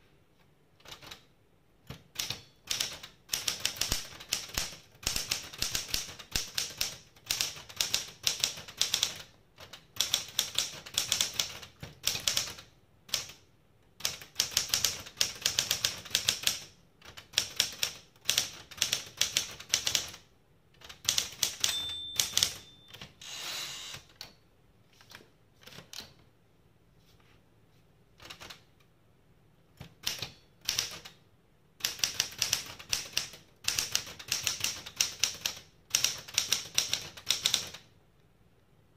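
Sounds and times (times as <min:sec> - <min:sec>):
manual typewriter typing: 0:00.8 - 0:01.3, 0:01.9 - 0:13.4, 0:14.0 - 0:20.2, 0:20.8 - 0:23.2, 0:28.2 - 0:28.6, 0:29.8 - 0:31.2, 0:31.8 - 0:37.9
typewriter margin bell: 0:21.4 - 0:23.4.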